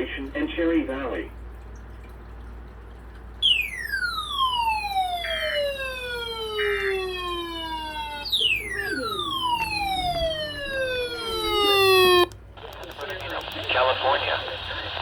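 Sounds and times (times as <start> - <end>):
siren sweeping down in pitch: 3.4 - 12.4.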